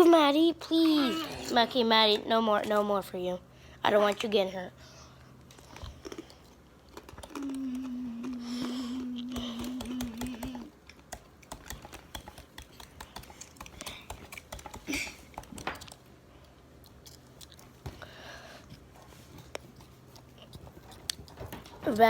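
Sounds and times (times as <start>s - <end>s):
knife tapping and chipping ice: 11.1s - 15.9s.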